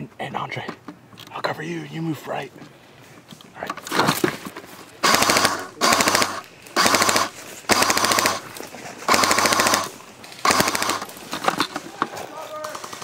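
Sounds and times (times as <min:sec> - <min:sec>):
airsoft gun automatic fire: 0:05.0 - 0:08.5, 0:09.1 - 0:11.5.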